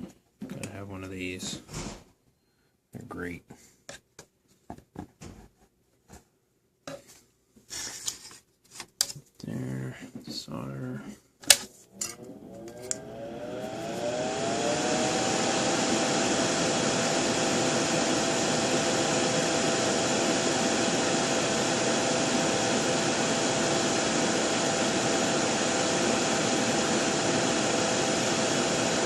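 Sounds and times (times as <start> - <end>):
extractor fan running: 11.9 - 29.0.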